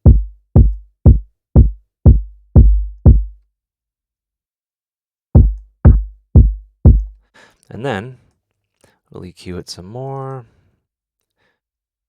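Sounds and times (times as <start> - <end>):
distorted kick drum looping: 0.0 - 3.4, 5.4 - 7.1.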